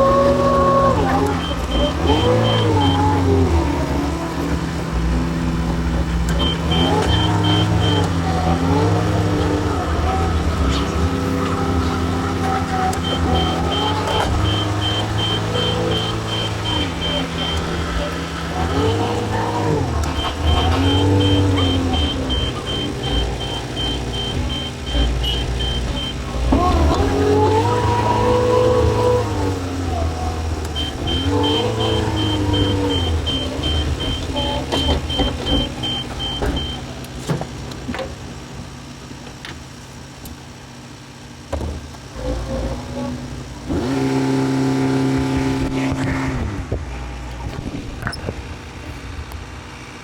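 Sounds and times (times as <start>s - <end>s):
backhoe diesel engine: 0.0s - 50.0s
reversing alarm beeping: 0.8s - 3.3s, 6.3s - 9.2s, 12.9s - 29.1s, 30.7s - 36.9s.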